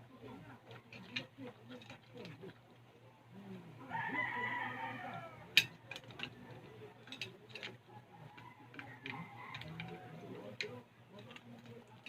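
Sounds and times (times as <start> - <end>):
rooster crowing: 3.9 - 5.6, 8.1 - 10.3.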